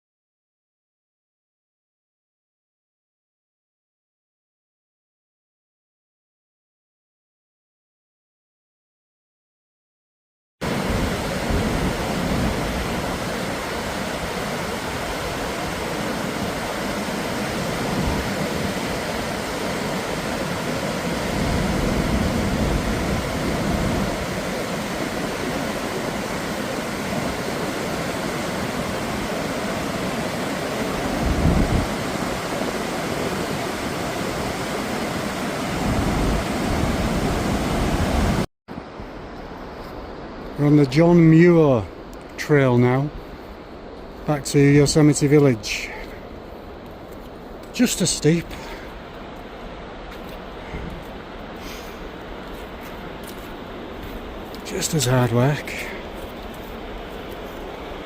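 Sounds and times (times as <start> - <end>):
waterfall roaring: 10.6 - 38.4, 47.2 - 58.0
wind buffeting microphone: 10.6 - 40.6.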